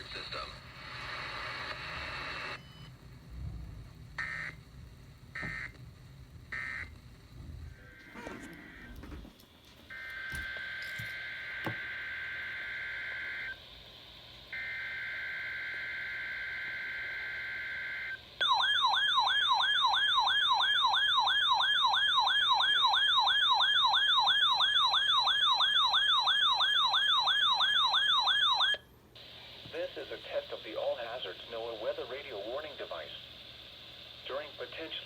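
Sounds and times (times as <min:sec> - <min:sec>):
warbling weather radio alarm: 0:04.2 - 0:04.6, 0:05.4 - 0:05.8, 0:09.9 - 0:13.6, 0:14.6 - 0:28.8.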